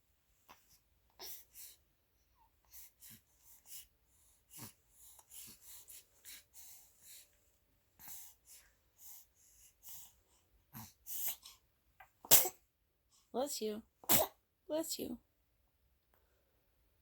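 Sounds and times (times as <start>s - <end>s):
baby breathing: 2.6s - 7.4s.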